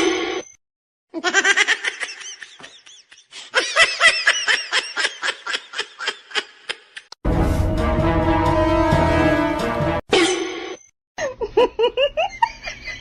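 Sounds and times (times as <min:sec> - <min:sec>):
rhythmic laughter: 0:01.4 - 0:07.1, 0:11.2 - 0:13.0.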